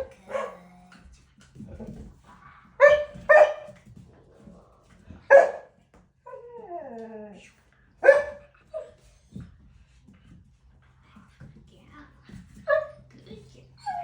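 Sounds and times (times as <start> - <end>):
dog barking: 0.0 - 0.7, 2.8 - 3.8, 5.3 - 5.8, 8.0 - 8.5
dog yipping: 5.3 - 5.7, 8.0 - 8.9, 13.8 - 14.0
dog whining: 13.8 - 14.0.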